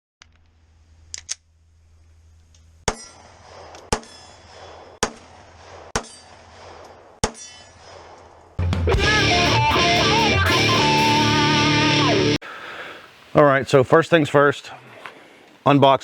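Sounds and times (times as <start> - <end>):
electric guitar music: 8.6 - 12.4.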